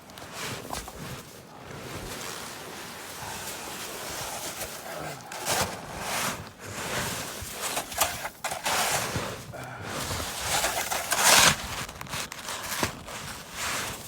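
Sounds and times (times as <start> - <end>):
snow shovel scraping snow: 0.2 - 14.0.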